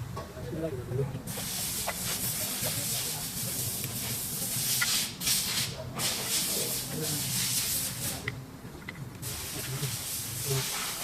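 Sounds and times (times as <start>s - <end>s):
hiss of spraying air: 1.3s - 8.2s, 9.2s - 11.0s.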